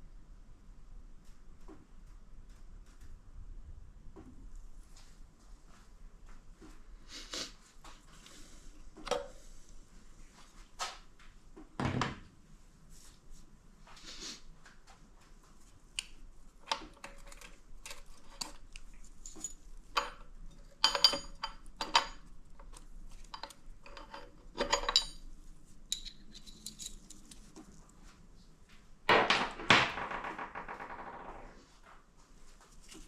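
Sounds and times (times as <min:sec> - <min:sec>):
metal parts clinking: 0:16.7 - 0:25.3, 0:25.9 - 0:27.4.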